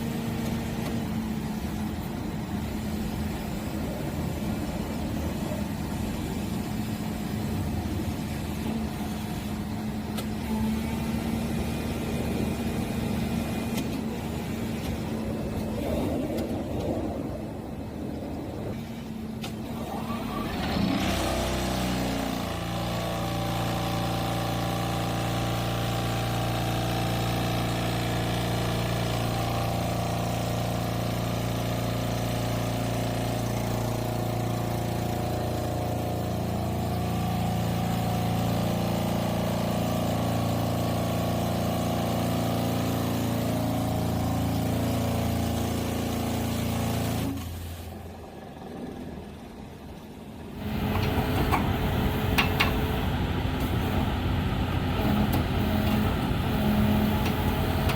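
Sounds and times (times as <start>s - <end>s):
excavator engine and hydraulic drone: 0.0s - 57.9s
vibratory pile driver pulsing: 50.6s - 57.9s.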